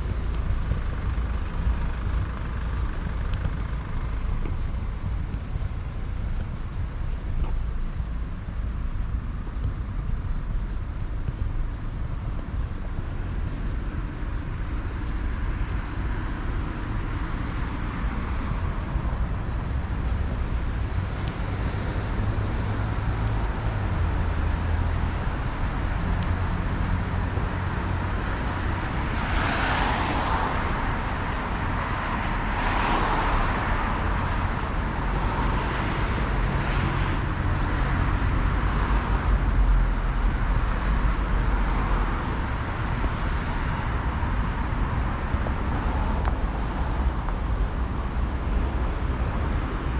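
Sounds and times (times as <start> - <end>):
cars passing: 0.0 - 49.9.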